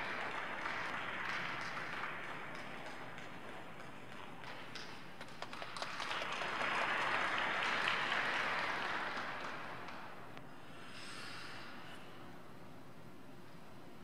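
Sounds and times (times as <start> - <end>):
audience applause: 0.0 - 10.2.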